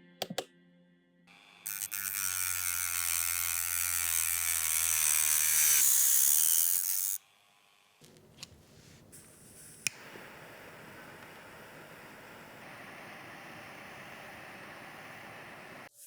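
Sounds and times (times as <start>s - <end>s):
power tool motor whirring: 1.3s - 7.2s, 8.0s - 15.9s
power tool clicks: 8.0s - 13.2s.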